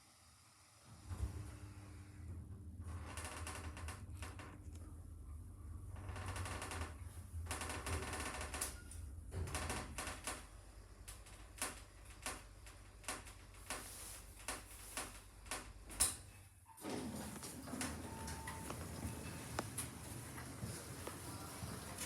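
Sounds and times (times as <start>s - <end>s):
lift humming: 16.9s - 22.0s.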